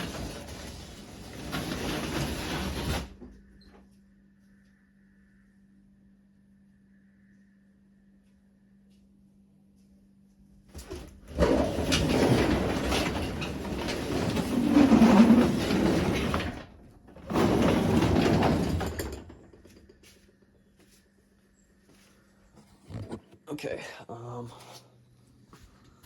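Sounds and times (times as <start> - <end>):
garage door rumbling along tracks: 0.0 - 3.7, 10.7 - 19.8.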